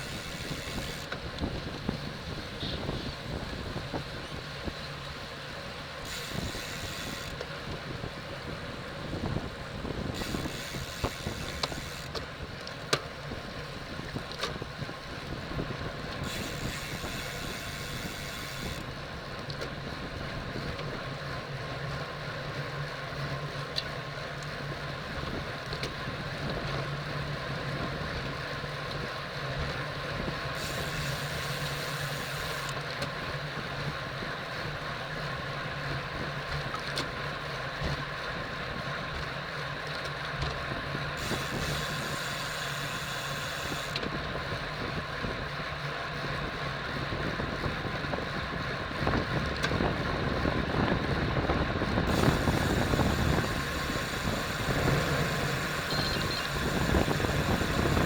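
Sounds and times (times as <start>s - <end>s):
wind rushing over microphone: 0.0s - 4.9s, 7.6s - 12.6s, 46.4s - 58.0s
tyre and road noise: 0.0s - 58.0s.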